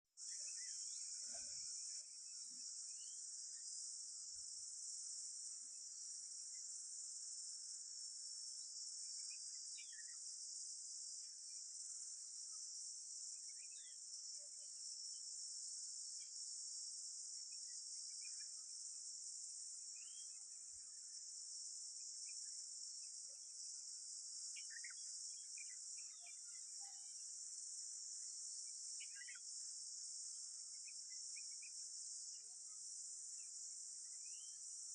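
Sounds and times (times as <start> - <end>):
insects chirring: 0.2 - 34.9
bird chirps: 24.5 - 26.7, 29.0 - 29.4.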